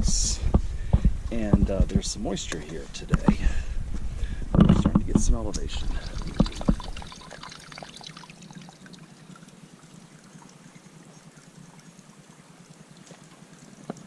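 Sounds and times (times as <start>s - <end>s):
faint trickle of water: 5.6s - 14.0s.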